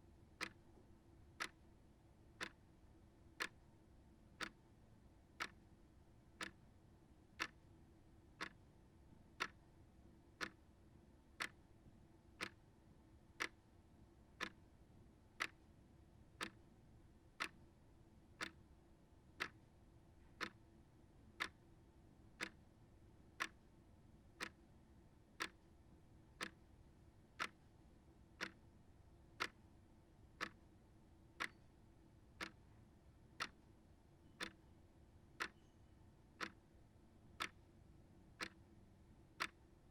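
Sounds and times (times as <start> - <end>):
shelf clock ticking: 25.4 - 25.6.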